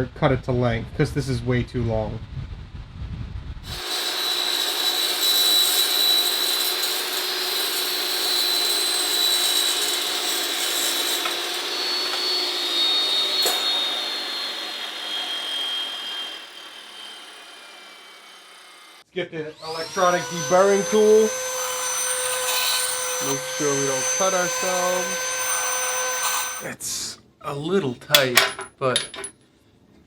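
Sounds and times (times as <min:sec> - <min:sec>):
power tool cutting pipe: 0:03.7 - 0:26.7.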